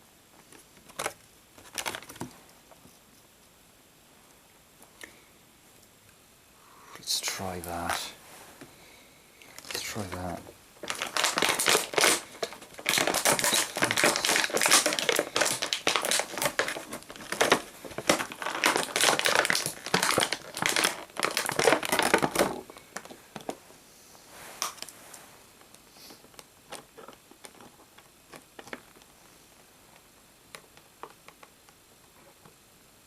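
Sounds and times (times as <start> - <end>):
plastic packaging crinkling: 0.5 - 2.4, 9.5 - 23.6.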